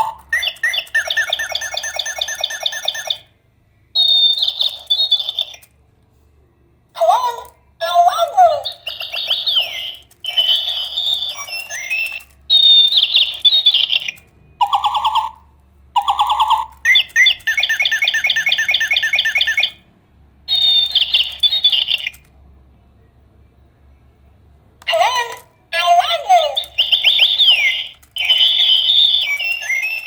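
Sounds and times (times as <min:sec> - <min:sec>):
electronic bird chirps and trills: 0:00.0 - 0:03.3, 0:04.0 - 0:05.7, 0:08.2 - 0:19.8, 0:20.5 - 0:22.3, 0:24.9 - 0:30.0.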